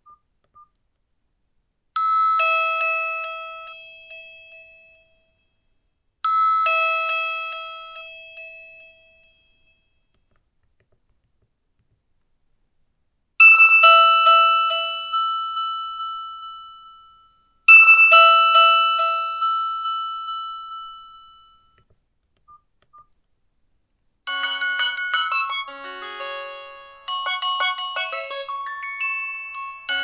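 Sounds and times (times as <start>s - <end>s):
bell-like phone ringtone chime: 2.0s - 10.1s, 13.4s - 21.8s, 24.3s - 30.0s
quick ringtone melody: 13.4s - 21.8s, 24.3s - 30.0s.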